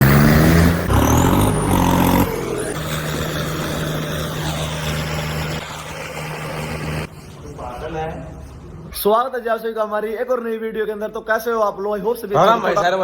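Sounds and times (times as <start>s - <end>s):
tractor engine running: 0.0s - 7.1s.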